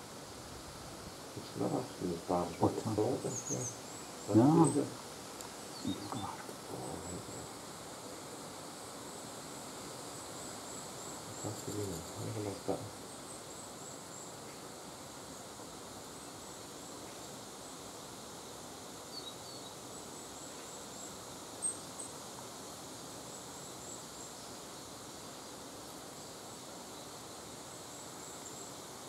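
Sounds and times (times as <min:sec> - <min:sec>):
steady soft hiss: 0:00.0 - 0:29.0
high thin bird calls: 0:05.7 - 0:07.5.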